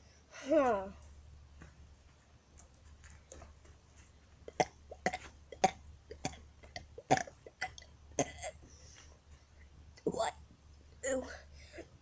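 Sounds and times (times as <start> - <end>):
boy gulping and clicking throat: 4.5 - 8.7.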